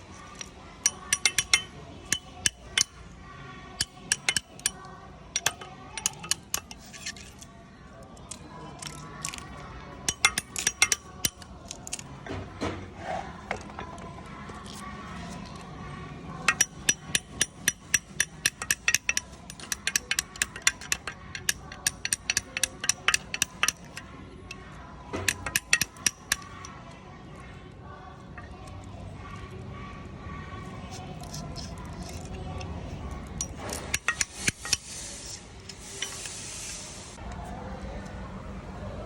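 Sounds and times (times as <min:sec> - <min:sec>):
rapid metallic clicking of hand tools: 0:00.1 - 0:03.2, 0:03.8 - 0:07.5, 0:08.2 - 0:12.3, 0:16.4 - 0:27.5, 0:30.9 - 0:37.0.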